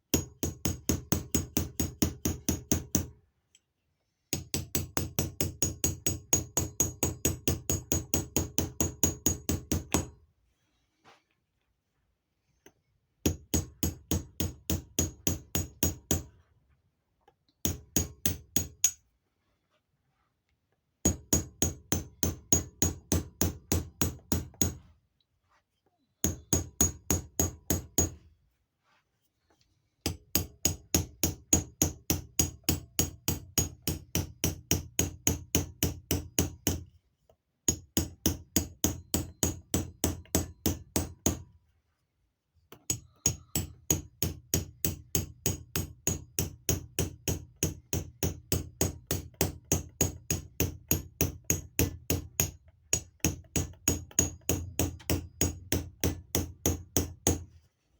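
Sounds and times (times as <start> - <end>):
hammer tapping: 4.3 - 10.2, 12.6 - 16.3, 17.6 - 19.0, 21.1 - 24.8, 26.2 - 28.2, 30.1 - 36.9, 37.7 - 41.4, 42.7 - 57.5.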